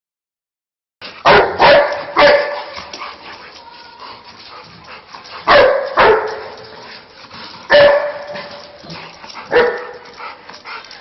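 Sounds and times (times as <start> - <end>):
dog barking: 1.2 - 2.8, 5.4 - 6.5, 7.7 - 8.4, 9.5 - 10.0.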